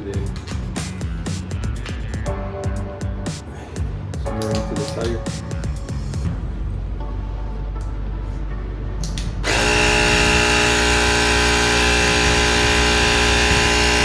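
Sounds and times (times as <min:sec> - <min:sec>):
electric tyre inflator buzzing: 0:09.4 - 0:14.0.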